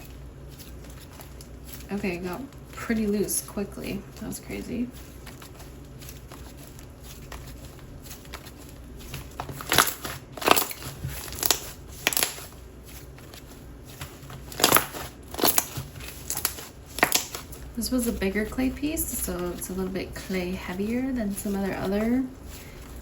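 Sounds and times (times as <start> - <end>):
slime squished by hand: 4.9 - 17.7.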